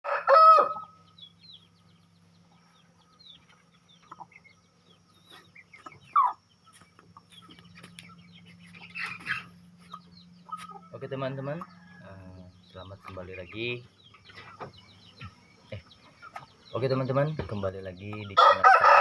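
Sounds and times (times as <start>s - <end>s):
chicken squawk: 0.0s - 1.0s, 5.4s - 6.4s, 8.6s - 10.8s, 18.4s - 19.0s
chickens clucking: 0.0s - 19.0s.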